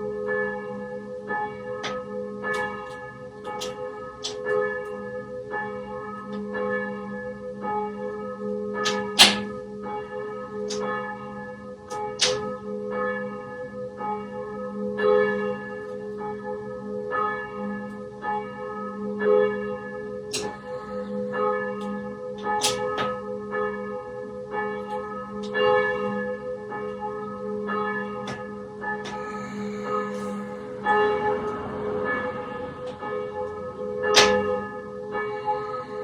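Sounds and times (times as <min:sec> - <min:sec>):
church bells pealing: 0:00.0 - 0:36.0.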